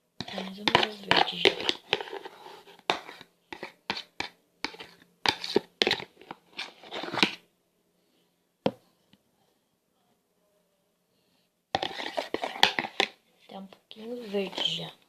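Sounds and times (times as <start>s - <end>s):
fork stirring sticky glue: 0.2s - 7.4s, 11.8s - 13.2s.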